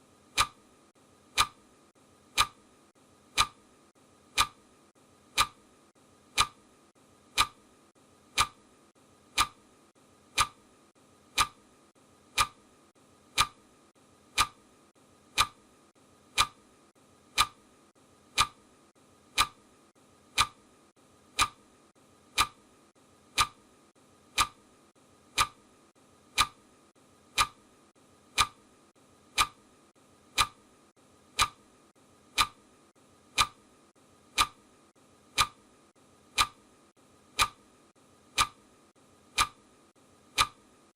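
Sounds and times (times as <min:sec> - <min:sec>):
clock ticking: 0:00.3 - 0:00.6, 0:01.3 - 0:01.6, 0:02.3 - 0:02.6, 0:03.3 - 0:03.6, 0:04.3 - 0:04.6, 0:05.3 - 0:05.7, 0:06.3 - 0:06.6, 0:07.3 - 0:07.7, 0:08.3 - 0:08.7, 0:09.3 - 0:09.7, 0:10.3 - 0:10.7, 0:11.3 - 0:11.7, 0:12.3 - 0:12.7, 0:13.3 - 0:13.7, 0:14.3 - 0:14.7, 0:15.3 - 0:15.7, 0:16.3 - 0:16.7, 0:17.3 - 0:17.7, 0:18.3 - 0:18.7, 0:19.3 - 0:19.7, 0:20.3 - 0:20.7, 0:21.3 - 0:21.6, 0:22.3 - 0:22.7, 0:23.3 - 0:23.7, 0:24.3 - 0:24.7, 0:25.3 - 0:25.7, 0:26.3 - 0:26.7, 0:27.3 - 0:27.7, 0:28.3 - 0:28.7, 0:29.3 - 0:29.7, 0:30.3 - 0:30.7, 0:31.3 - 0:31.7, 0:32.3 - 0:32.7, 0:33.3 - 0:33.7, 0:34.3 - 0:35.7, 0:36.3 - 0:36.7, 0:37.3 - 0:37.7, 0:38.3 - 0:38.7, 0:39.3 - 0:39.7, 0:40.3 - 0:40.7.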